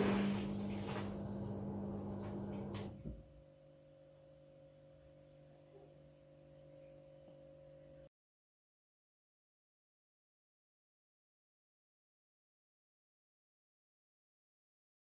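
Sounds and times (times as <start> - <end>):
washing machine humming and rushing: 0.0 - 3.2
washing machine clunk: 0.0 - 3.3.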